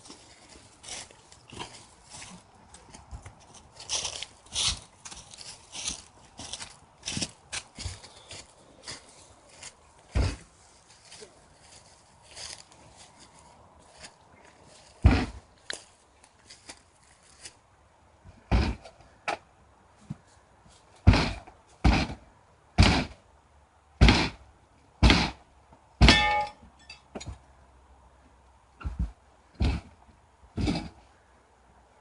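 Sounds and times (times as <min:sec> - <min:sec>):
heavy thumps: 0:10.1 - 0:10.5, 0:15.0 - 0:15.5, 0:18.2 - 0:19.4, 0:21.0 - 0:22.2, 0:28.8 - 0:30.0, 0:30.6 - 0:31.1.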